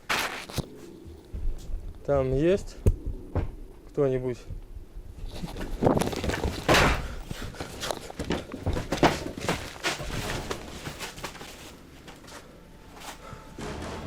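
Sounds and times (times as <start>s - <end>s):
knocks bumps and thuds: 1.3s - 3.6s, 5.3s - 11.6s.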